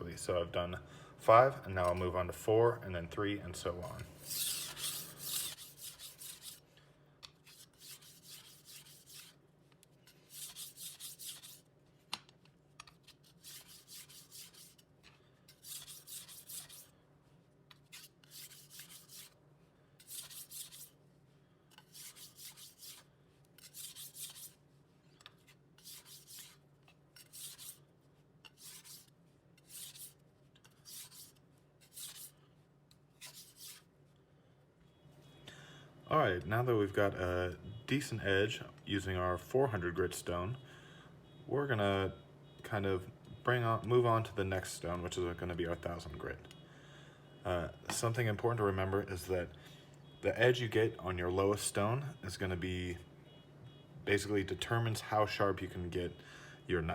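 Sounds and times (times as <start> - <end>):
knife scraping on whetstone: 4.2 - 6.6, 7.3 - 9.4, 10.0 - 11.6, 12.8 - 14.9, 15.5 - 16.9, 17.7 - 19.4, 20.0 - 21.0, 21.7 - 24.6, 25.2 - 27.8, 28.4 - 32.4, 33.2 - 33.9.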